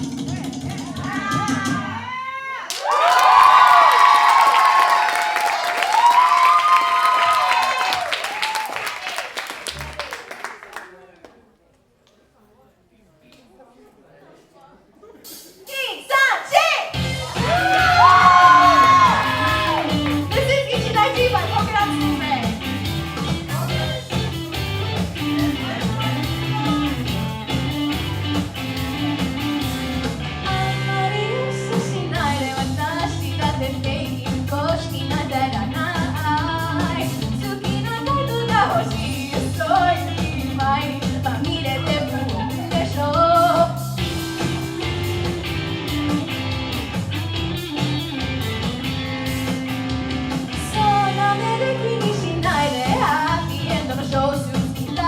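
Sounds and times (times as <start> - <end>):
guitar: 16.8 - 55.0
rock music with drums: 16.9 - 55.0.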